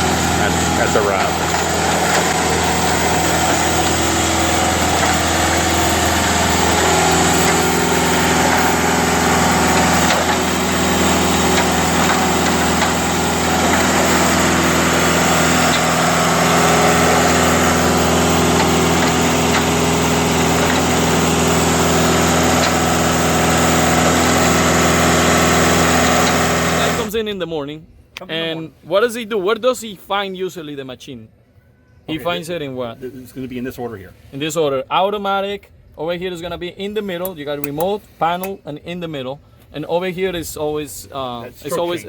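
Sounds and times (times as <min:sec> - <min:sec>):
concrete pump engine running: 0:00.0 - 0:27.1.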